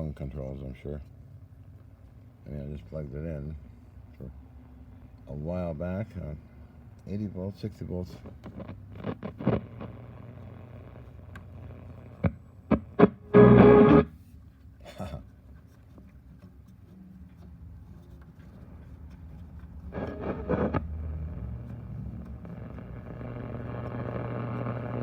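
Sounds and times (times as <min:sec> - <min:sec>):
radio static crackles: 0:07.9 - 0:14.1, 0:19.9 - 0:25.0
distorted radio broadcast: 0:08.5 - 0:14.1, 0:19.9 - 0:25.0
low hum: 0:19.9 - 0:25.0
loud noise burst with tone: 0:20.0 - 0:23.6.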